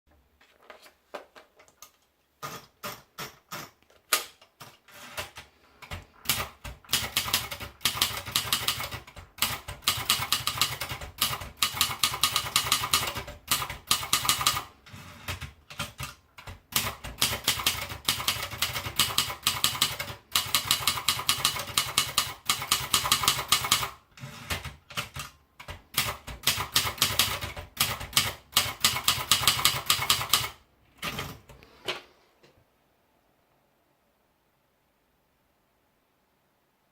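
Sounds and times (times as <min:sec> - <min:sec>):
typewriter keystrokes: 0:02.4 - 0:31.5.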